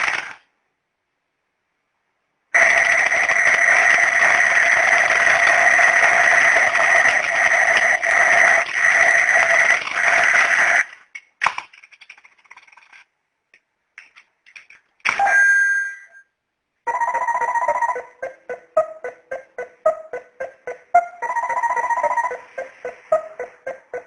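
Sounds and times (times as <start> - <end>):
harsh electronic alarm clock: 2.6 - 10.9, 16.9 - 24.0
short ringing tone: 15.2 - 16.3.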